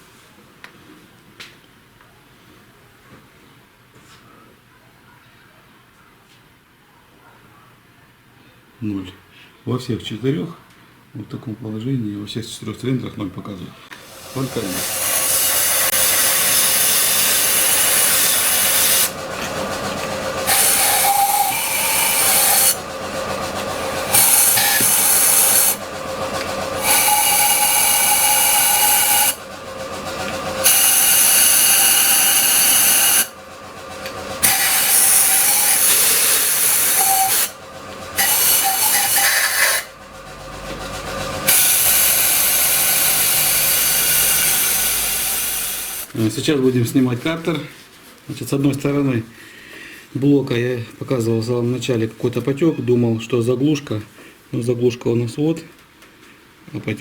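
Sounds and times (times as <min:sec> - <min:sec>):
loud hissing bursts: 0:14.0 - 0:22.8, 0:23.6 - 0:25.9.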